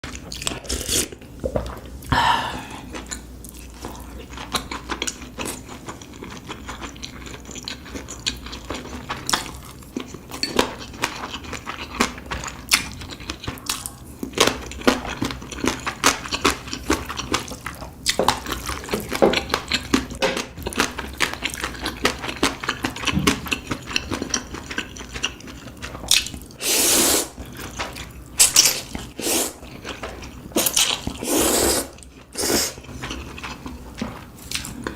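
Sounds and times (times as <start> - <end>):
wet chewing clicks and smacks: 4.3 - 26.6.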